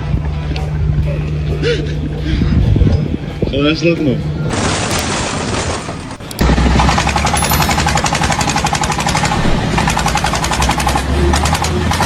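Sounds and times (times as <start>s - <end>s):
machine hammering rattle: 4.5s - 11.0s.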